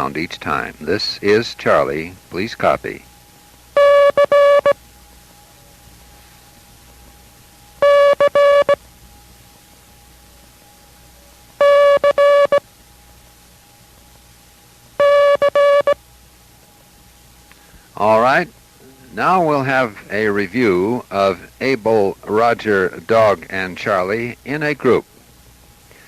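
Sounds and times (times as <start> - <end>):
morse code beeps: 3.8 - 4.8, 7.8 - 8.8, 11.6 - 12.6, 15.0 - 16.0.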